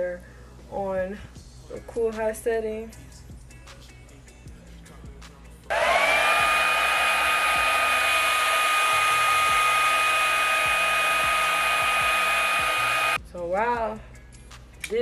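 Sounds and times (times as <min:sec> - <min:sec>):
blow dryer motor whine: 0:05.7 - 0:13.2
rushing air from blow dryer: 0:05.7 - 0:13.2.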